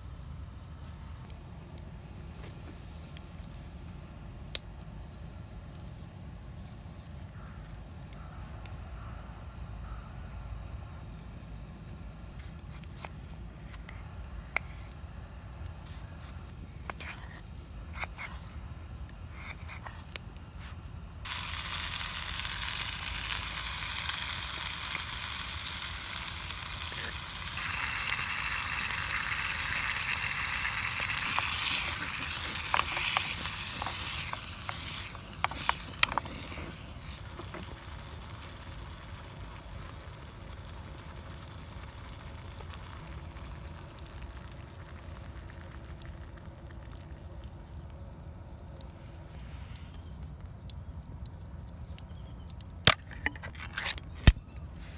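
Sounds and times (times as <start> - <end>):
food sizzling in a pan: 21.3 - 43.4.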